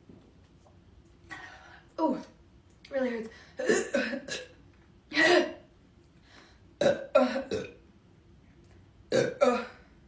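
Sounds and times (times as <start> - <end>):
girl burping: 6.8 - 7.8, 9.1 - 9.9.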